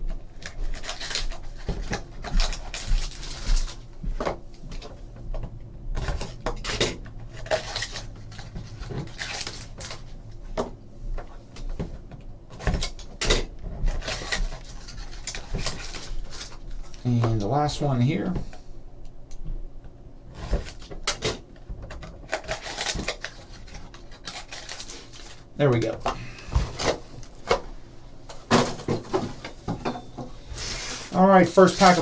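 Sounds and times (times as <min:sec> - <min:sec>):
foil packs crinkling: 0:00.2 - 0:03.9, 0:06.0 - 0:10.2, 0:12.8 - 0:18.3, 0:22.0 - 0:27.6, 0:30.6 - 0:32.0.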